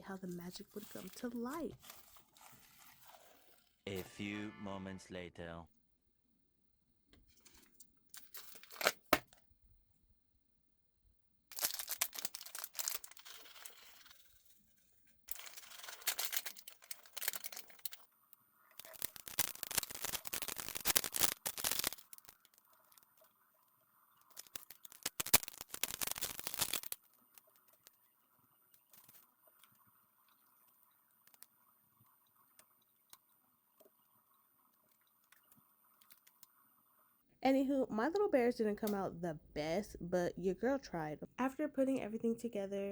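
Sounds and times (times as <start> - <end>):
slime crackling and popping: 0.2 - 3.6, 11.5 - 14.2, 18.8 - 23.0, 24.3 - 27.8.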